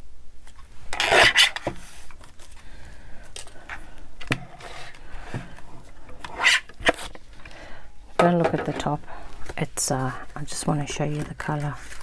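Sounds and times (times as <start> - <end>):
paper rustling: 8.7 - 12.0.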